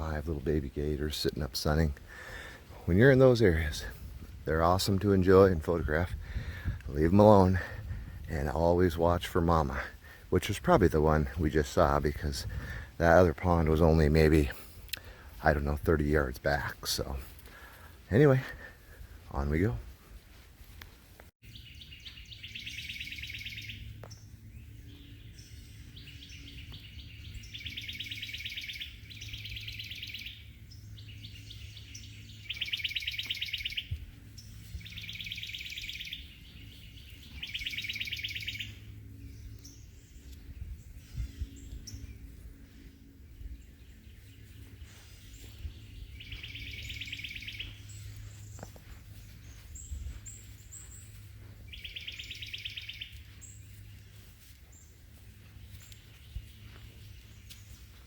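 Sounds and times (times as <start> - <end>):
steady low hum: 0.0 - 58.0
songbird trilling: 21.5 - 42.4, 43.3 - 55.0.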